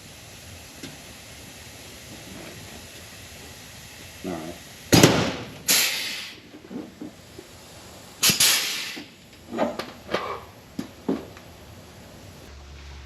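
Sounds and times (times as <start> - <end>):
short hiss of air: 0.0 - 6.6, 7.8 - 9.3
pneumatic rivet gun popping: 4.9 - 6.4, 8.2 - 9.2.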